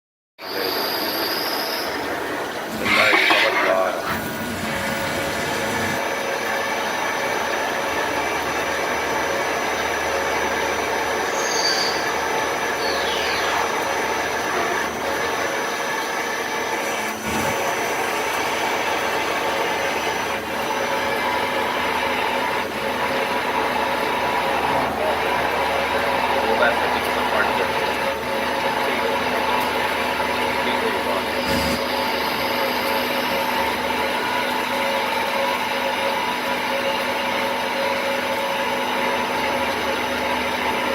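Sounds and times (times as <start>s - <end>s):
high squeals: 0.4s - 4.3s, 11.2s - 13.9s
lathe mechanical whir: 0.4s - 40.9s.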